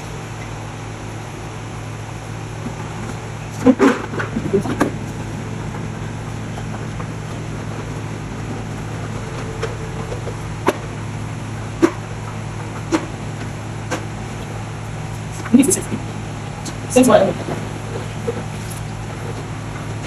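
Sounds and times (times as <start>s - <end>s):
steady low hum: 0.0s - 20.0s
kitchen clatters and knocks: 4.4s - 5.4s.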